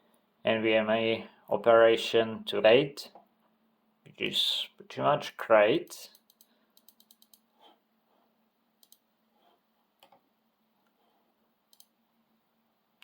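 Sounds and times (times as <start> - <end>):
laptop keys clicking: 6.1 - 7.5, 8.8 - 9.0, 11.7 - 11.9.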